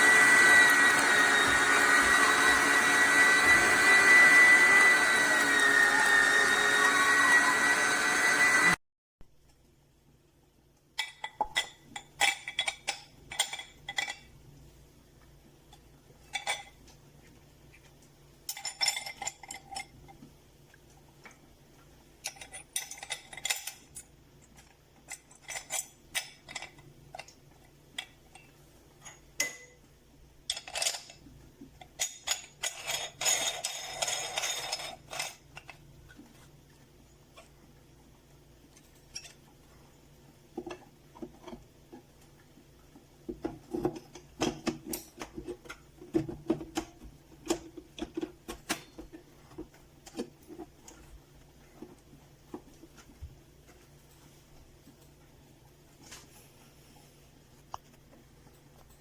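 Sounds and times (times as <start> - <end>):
metal kitchenware clinking: 18.5 - 20.0, 28.3 - 29.8.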